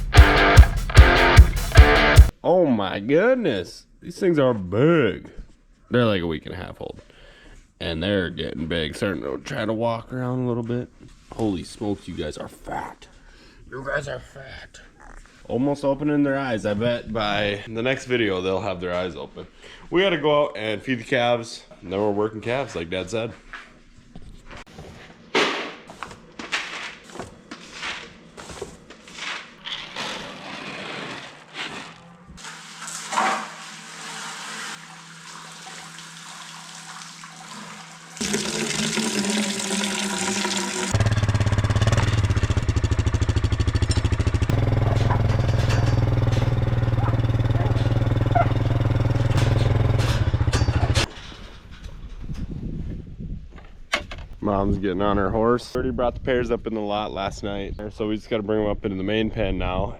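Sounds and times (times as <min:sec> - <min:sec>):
engine running: 0:38.2 - 0:51.1
knocks and clatters: 0:43.8 - 0:52.3.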